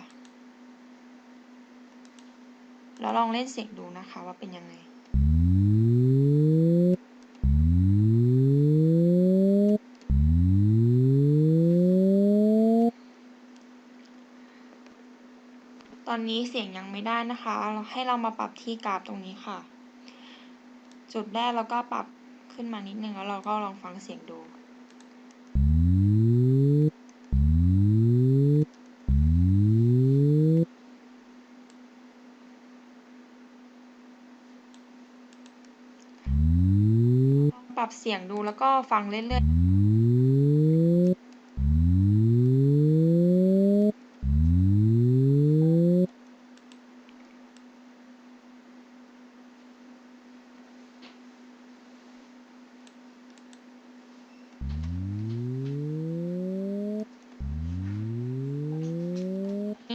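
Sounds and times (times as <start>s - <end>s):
synthesized buzzy tones gliding upward: 5.2s - 12.9s, 25.6s - 30.7s, 36.3s - 37.5s, 39.3s - 46.1s, 54.6s - 59.8s.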